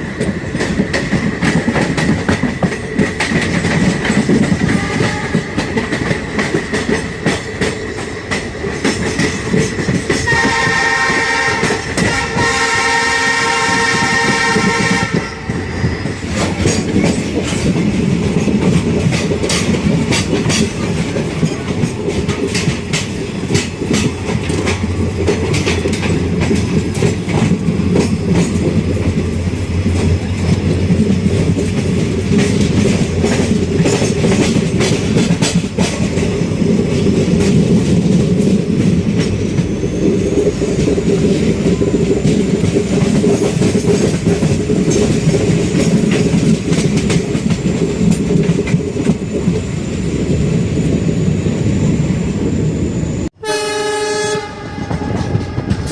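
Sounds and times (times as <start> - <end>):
train wheels clattering on rails: 0.0 - 52.6, 54.3 - 55.9
train horn: 4.6 - 5.6, 10.1 - 15.8, 53.4 - 55.9.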